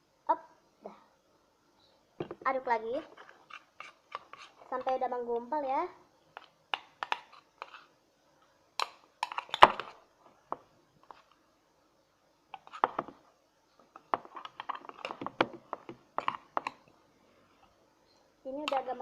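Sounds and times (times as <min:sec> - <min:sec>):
utensil scraping a bowl: 0:02.9 - 0:05.0, 0:06.4 - 0:07.9, 0:12.5 - 0:13.1, 0:14.0 - 0:16.8.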